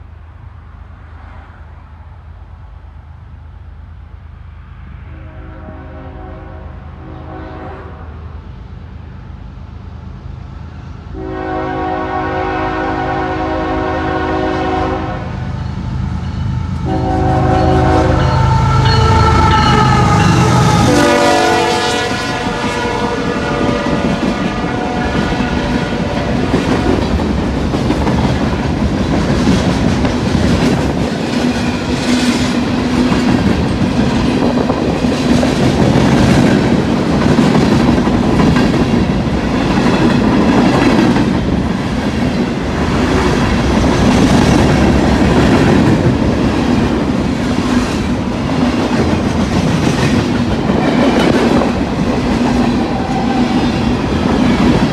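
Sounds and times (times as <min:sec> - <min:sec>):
freight train cars rumbling: 0:00.0 - 0:54.9
train horn: 0:04.8 - 0:08.3, 0:11.1 - 0:15.5, 0:16.4 - 0:27.0.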